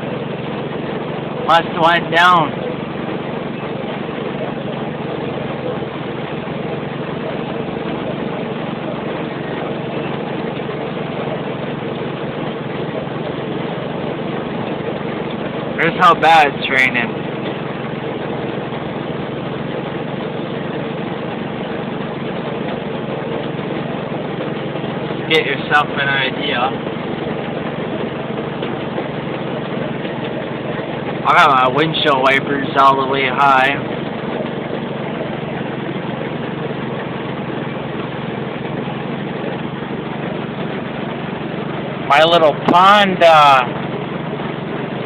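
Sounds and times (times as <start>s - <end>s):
car engine idling: 0.0s - 45.0s.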